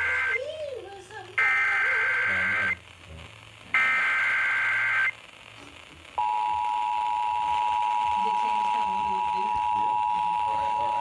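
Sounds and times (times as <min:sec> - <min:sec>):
buzzing digital data bursts: 0:00.0 - 0:00.5, 0:01.4 - 0:02.8, 0:03.7 - 0:05.2
two-tone alert signal: 0:01.4 - 0:02.8.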